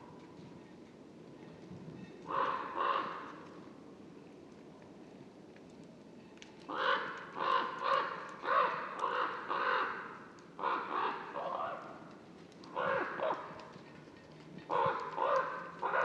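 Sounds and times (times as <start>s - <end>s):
raven calling: 2.2s - 3.6s, 6.7s - 13.8s, 14.6s - 16.0s.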